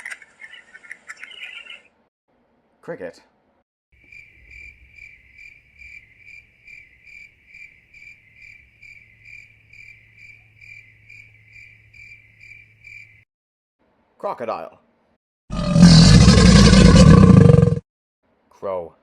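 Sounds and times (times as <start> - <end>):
cricket chirping: 4.0 - 13.3.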